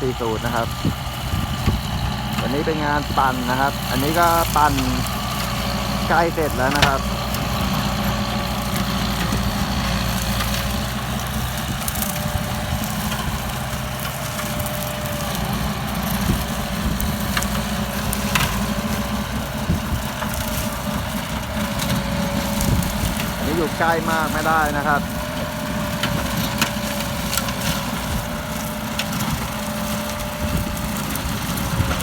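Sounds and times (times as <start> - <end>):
rotary implement shredding plants: 0.0 - 32.0
tractor diesel engine under load: 0.0 - 32.0.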